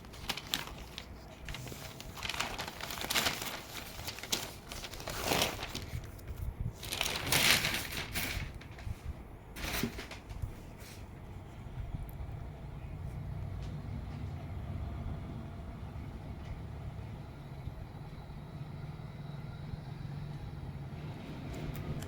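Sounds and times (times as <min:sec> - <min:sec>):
packaging crinkling and rustling: 0:00.0 - 0:10.6.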